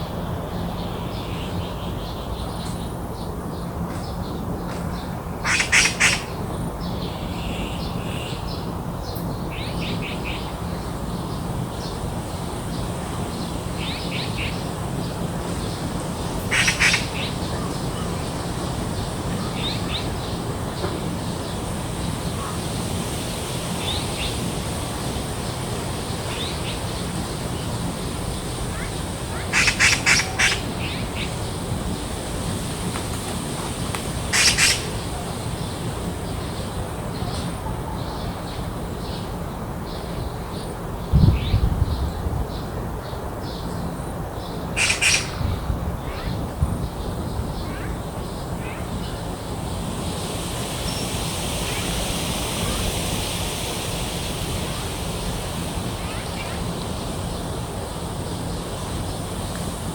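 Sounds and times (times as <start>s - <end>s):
small birds chirping: 0.5s - 59.9s
bird harsh chattering calls: 4.7s - 8.5s, 12.2s - 37.5s, 44.7s - 46.4s
high-pitched insect trill: 49.0s - 58.1s.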